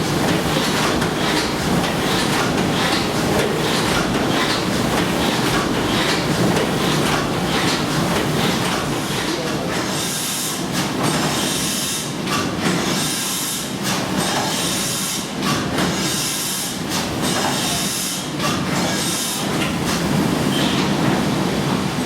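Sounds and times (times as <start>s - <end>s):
steam engine clattering: 0.0s - 10.1s.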